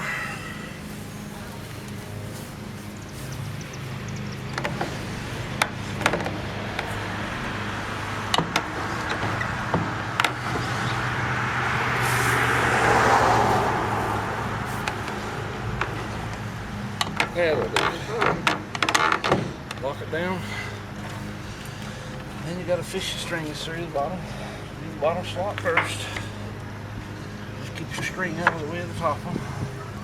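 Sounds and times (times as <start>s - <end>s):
road vehicle passing: 0.0s - 30.0s
steady low hum: 0.0s - 30.0s
wooden knocks of baler: 4.4s - 11.4s, 14.5s - 20.0s.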